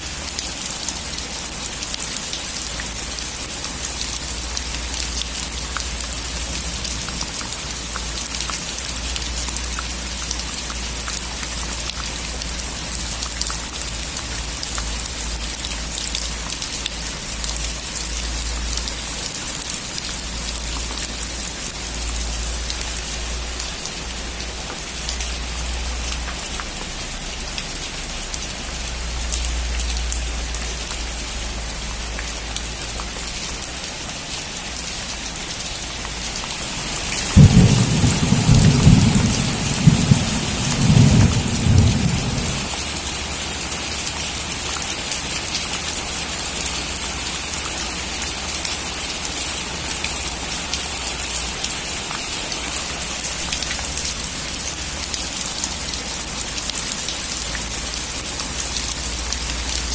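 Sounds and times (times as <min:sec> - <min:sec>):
heavy rain on a metal roof: 0:00.0 - 0:59.9.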